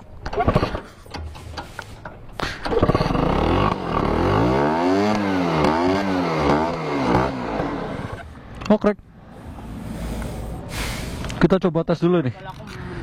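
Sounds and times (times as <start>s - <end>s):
motorcycle engine revving: 2.6s - 8.4s.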